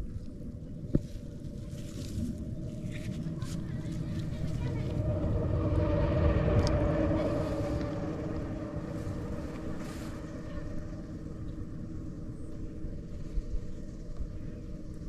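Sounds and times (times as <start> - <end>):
motor engine passing by: 2.6 - 12.0.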